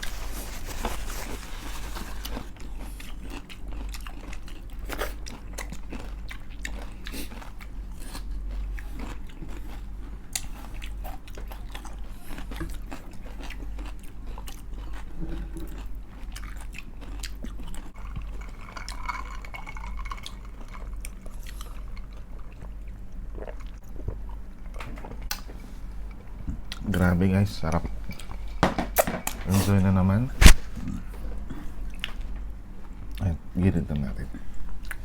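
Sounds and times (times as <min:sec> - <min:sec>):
crunching and chewing crispy food: 0:00.0 - 0:25.4.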